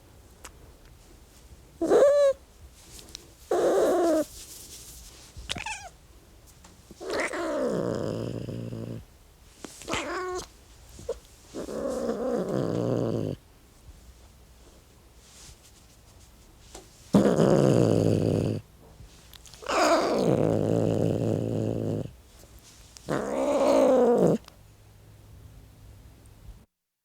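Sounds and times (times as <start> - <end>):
cat yowling and growling: 1.8 - 2.4, 3.5 - 4.3, 5.5 - 6.0, 7.0 - 9.0, 9.8 - 10.5, 17.2 - 18.6, 19.6 - 22.1, 23.1 - 24.5.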